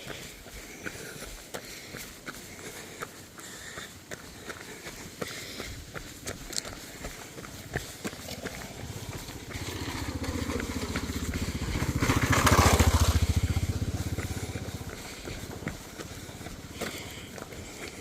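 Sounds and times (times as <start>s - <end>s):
motorbike passing by: 7.6s - 18.0s.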